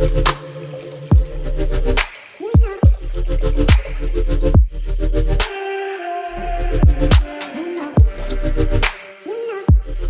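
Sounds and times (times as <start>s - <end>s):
electronic music with a beat: 0.0s - 5.7s, 6.4s - 10.0s.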